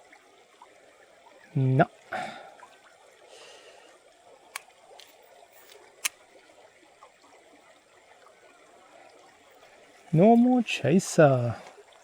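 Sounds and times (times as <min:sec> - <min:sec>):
creek trickling: 0:00.0 - 0:12.0.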